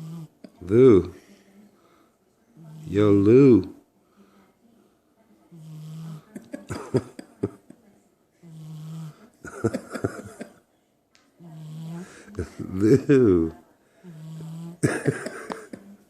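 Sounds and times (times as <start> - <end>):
heavy rattling snoring: 11.5 - 12.1.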